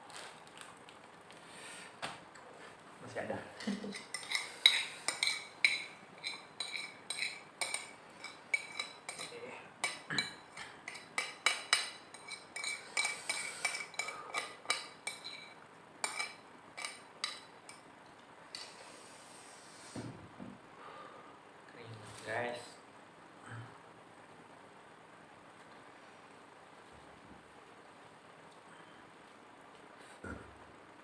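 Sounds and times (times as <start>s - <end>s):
cutlery clinking on a plate: 3.6s - 17.5s.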